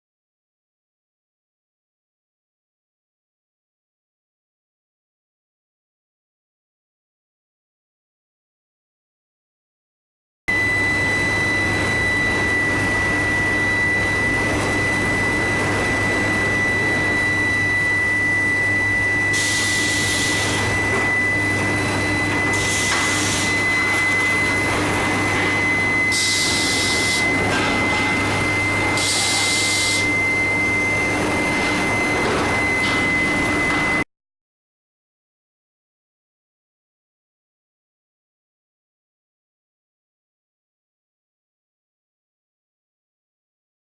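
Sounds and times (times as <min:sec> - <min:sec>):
electrical hum: 0:10.5 - 0:34.0
induction heater whine: 0:10.5 - 0:34.1
machinery noise: 0:10.6 - 0:34.0.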